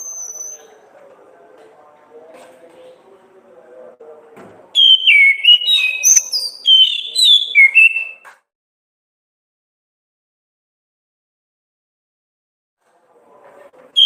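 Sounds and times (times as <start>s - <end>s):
thrush singing whistled notes: 0.0s - 0.7s, 4.8s - 8.2s.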